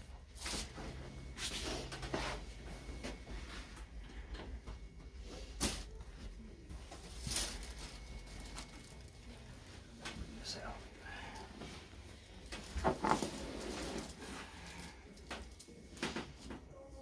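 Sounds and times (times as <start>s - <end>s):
rustling on padded table: 0.4s - 3.9s, 12.6s - 14.6s.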